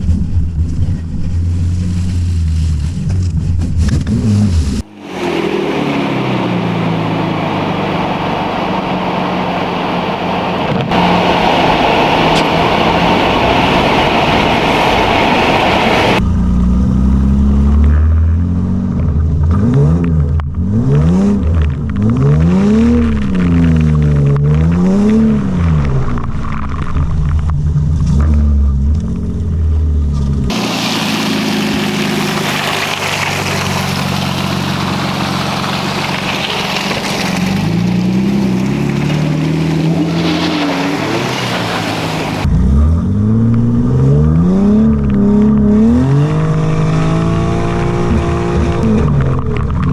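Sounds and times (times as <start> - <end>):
engine revving up and down: 3.6 - 16.2, 30.5 - 49.1
steady rushing noise: 4.8 - 16.2, 30.5 - 42.5.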